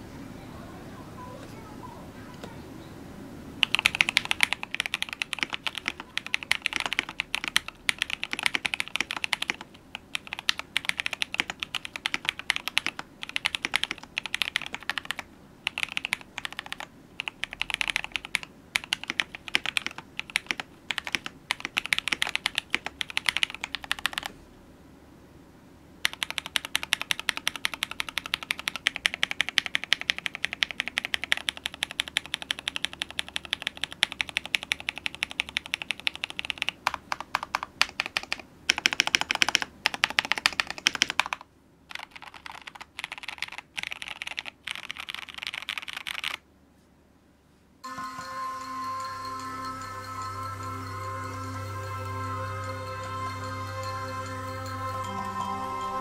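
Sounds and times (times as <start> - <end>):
fast typing on mechanical keyboard: 3.6 - 24.3, 26.0 - 46.4.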